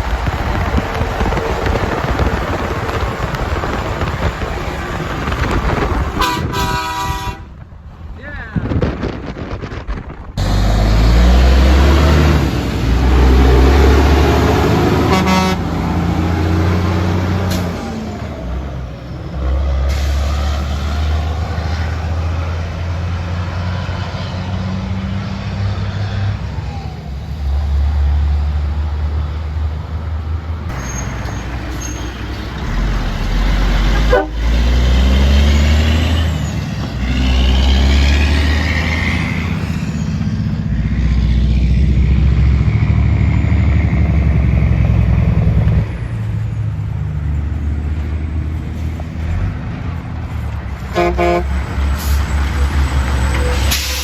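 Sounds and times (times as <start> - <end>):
diesel trucks driving past: 0.0 - 54.0
truck horn toot: 6.2 - 7.6, 14.8 - 16.1, 30.7 - 36.5, 50.9 - 52.3.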